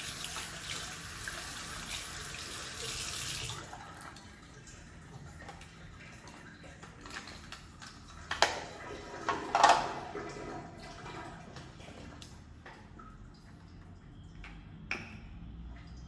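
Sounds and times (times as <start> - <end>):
water running and splashing: 0.0 - 11.9.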